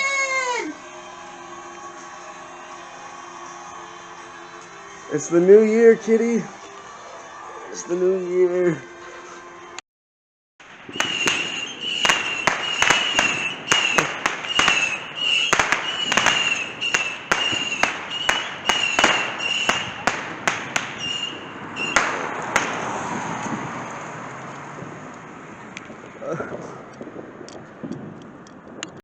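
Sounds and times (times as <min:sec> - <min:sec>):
firecracker bangs: 0:10.6 - 0:23.7.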